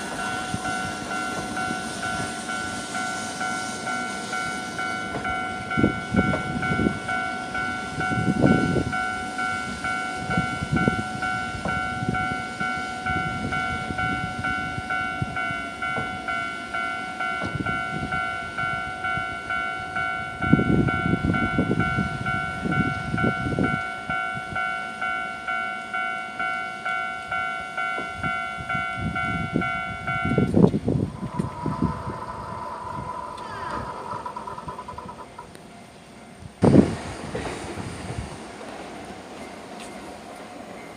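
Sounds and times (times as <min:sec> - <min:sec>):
level crossing alarm bell dinging: 0:00.0 - 0:30.6
electric train rumbling and clattering: 0:00.0 - 0:40.9.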